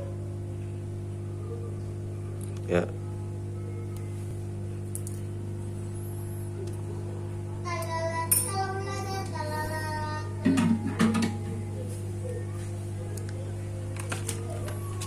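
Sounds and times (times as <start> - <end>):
steady low hum: 0.0 - 15.0
high child-like voice singing: 7.6 - 10.8.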